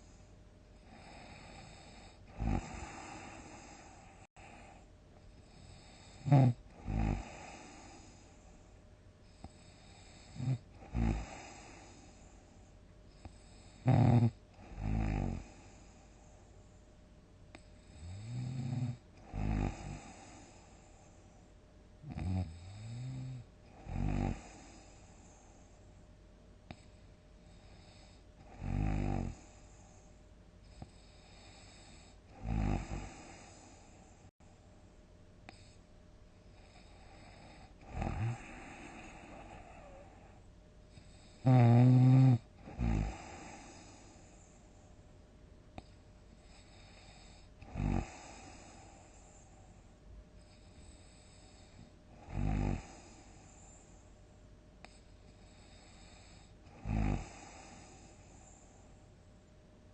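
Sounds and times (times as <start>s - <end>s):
person snoring loudly: 0.9s - 4.0s, 5.6s - 8.0s, 9.9s - 11.9s, 13.5s - 15.6s, 17.9s - 20.4s, 22.0s - 24.8s, 27.8s - 29.5s, 31.2s - 33.7s, 36.7s - 40.1s, 41.2s - 44.0s, 46.6s - 48.8s, 52.2s - 53.2s, 55.5s - 58.1s.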